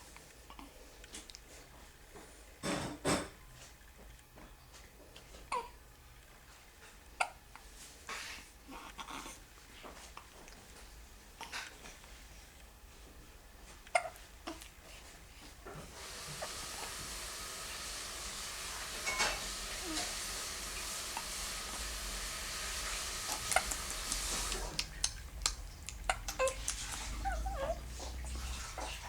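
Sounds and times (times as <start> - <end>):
steady hiss: 15.7 - 27.2.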